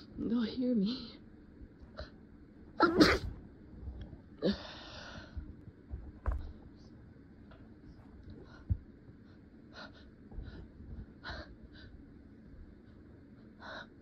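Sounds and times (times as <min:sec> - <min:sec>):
shaky breaths and gasps: 0:04.4 - 0:05.6, 0:08.1 - 0:14.0.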